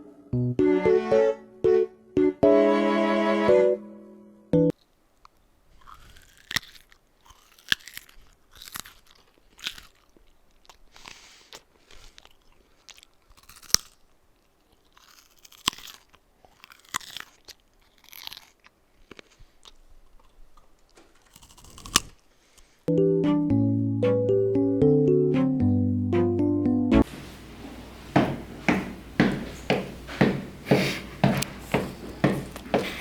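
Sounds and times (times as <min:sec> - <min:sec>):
crunches with sharp cracks: 0:04.7 - 0:22.8.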